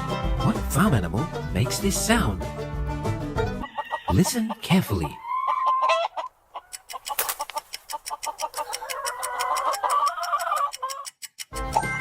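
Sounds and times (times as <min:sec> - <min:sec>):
chickens clucking: 0:03.4 - 0:12.0.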